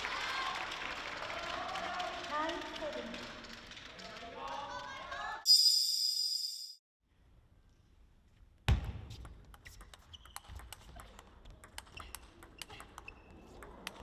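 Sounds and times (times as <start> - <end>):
table tennis balls clicking: 9.2 - 14.0.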